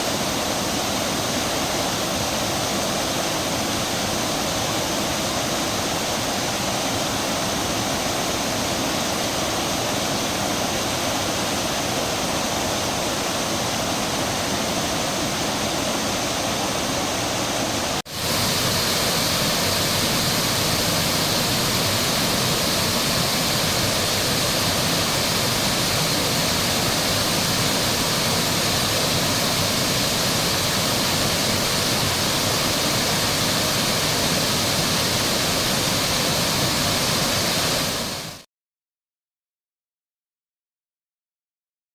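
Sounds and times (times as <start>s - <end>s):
water pouring over waterfall: 18.1s - 38.4s.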